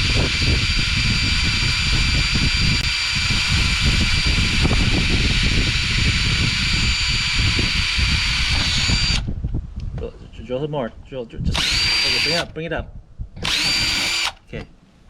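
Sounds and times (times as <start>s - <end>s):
electric drill whining into metal: 0.0s - 9.3s, 11.5s - 12.5s, 13.4s - 14.6s.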